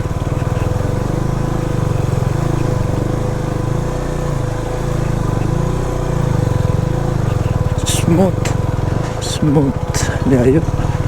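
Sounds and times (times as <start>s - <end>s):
motorcycle engine at low revs: 0.0s - 11.0s.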